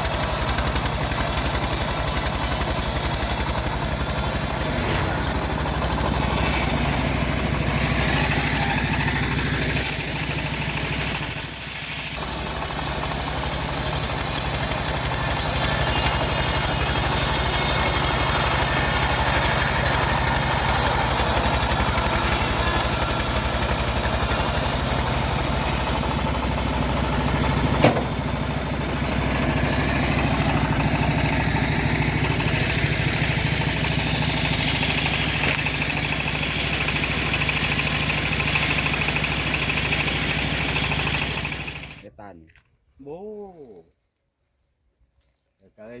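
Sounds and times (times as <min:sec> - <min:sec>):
sawmill engine humming: 0:00.0 - 0:42.0
sharp knock: 0:27.8 - 0:28.2.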